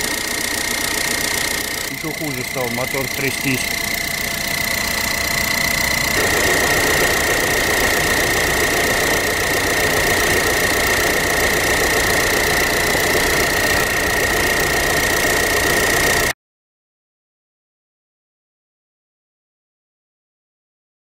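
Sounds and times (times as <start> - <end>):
diesel engine idling roughly: 0.0 - 16.3.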